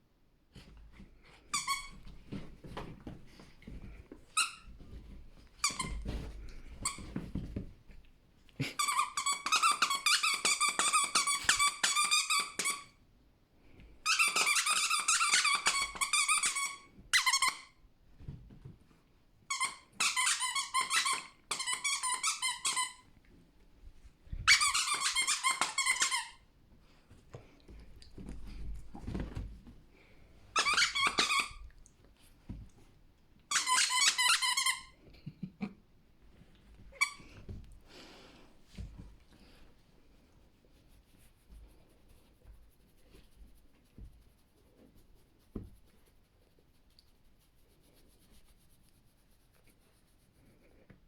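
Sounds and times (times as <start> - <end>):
squeaky toy squeaking: 8.8 - 12.9, 14.1 - 17.7, 19.5 - 23.0, 24.5 - 26.4, 30.6 - 31.6, 33.5 - 34.9.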